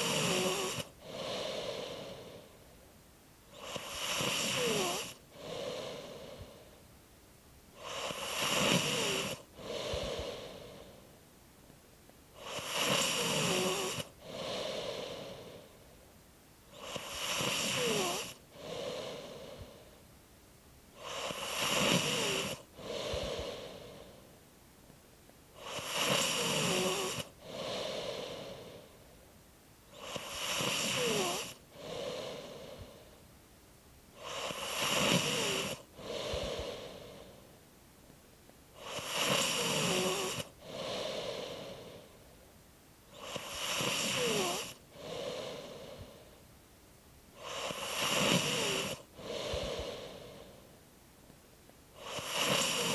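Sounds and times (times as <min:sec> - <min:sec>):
person snoring: 0:00.0 - 0:02.6, 0:03.5 - 0:06.8, 0:07.8 - 0:11.1, 0:12.4 - 0:15.8, 0:16.7 - 0:20.0, 0:21.0 - 0:24.3, 0:25.6 - 0:29.0, 0:29.9 - 0:33.2, 0:34.2 - 0:37.5, 0:38.8 - 0:42.2, 0:43.1 - 0:46.4, 0:47.4 - 0:50.7, 0:52.0 - 0:52.9.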